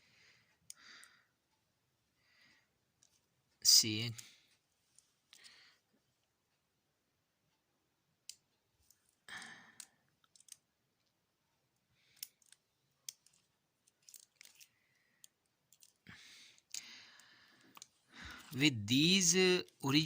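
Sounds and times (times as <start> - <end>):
battery cells clicking: 9.8 - 10.7, 12.0 - 16.0.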